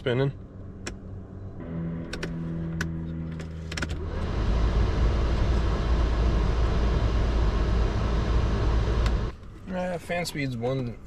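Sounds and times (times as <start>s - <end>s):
blower motor humming: 1.6s - 9.3s
clicks: 2.0s - 4.0s
rush of air from fan: 4.0s - 9.3s.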